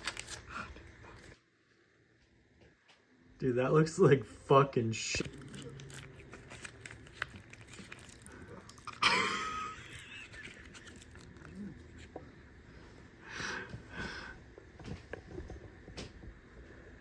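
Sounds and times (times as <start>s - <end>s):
person wheezing laugh: 9.0s - 11.1s.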